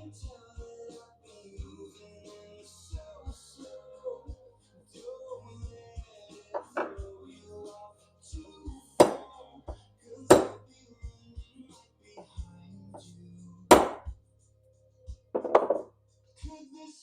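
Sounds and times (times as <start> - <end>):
background music: 0.0 - 17.0
small hammer striking metal: 9.0 - 9.3, 10.3 - 10.6, 13.7 - 14.1, 15.4 - 15.9.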